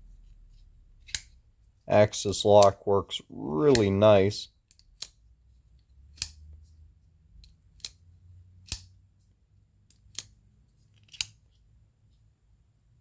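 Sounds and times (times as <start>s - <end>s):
folding knife lock clicking: 11.0s - 11.4s.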